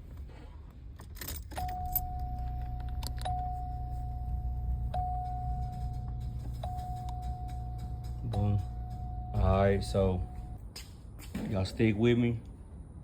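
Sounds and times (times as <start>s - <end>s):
keys jingling: 1.0s - 10.9s
low hum: 1.5s - 11.0s
steady high tone: 1.7s - 10.6s.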